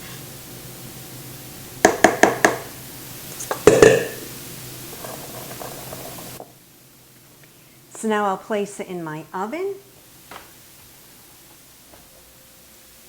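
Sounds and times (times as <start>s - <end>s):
cake pan knocking on counter: 1.8s - 2.7s.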